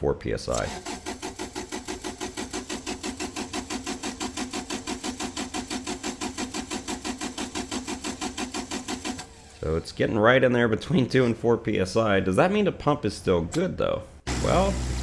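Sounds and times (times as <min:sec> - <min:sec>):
fuel pump ticking rapidly: 0:00.6 - 0:09.3.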